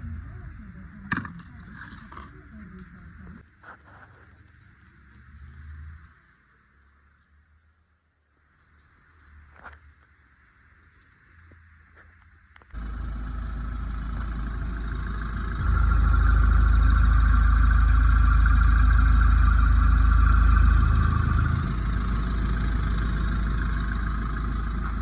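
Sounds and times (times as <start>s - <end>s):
car engine running: 12.7s - 25.0s.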